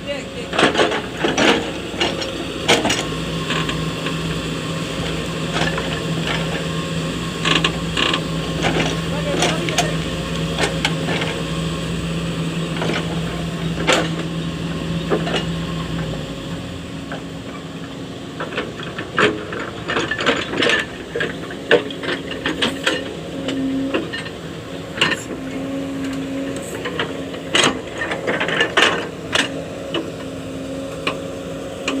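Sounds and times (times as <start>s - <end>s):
excavator engine humming: 0.0s - 32.0s
metallic clanks and creaks: 0.5s - 3.8s, 18.4s - 30.1s.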